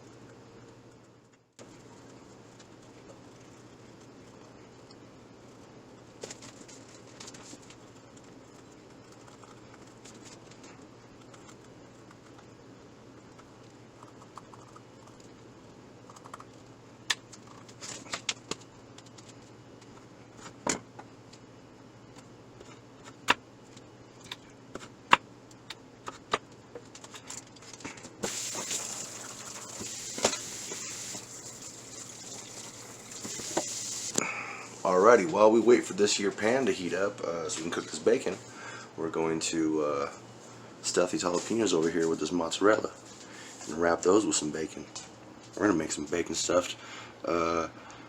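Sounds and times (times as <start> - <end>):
steady hiss: 28.2 - 35.6.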